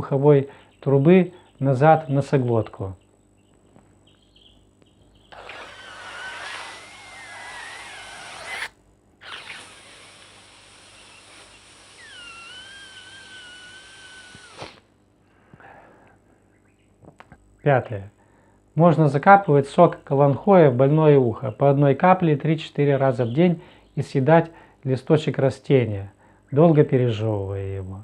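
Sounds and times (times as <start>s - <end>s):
person sniffing hard through nose: 14.5s - 14.8s.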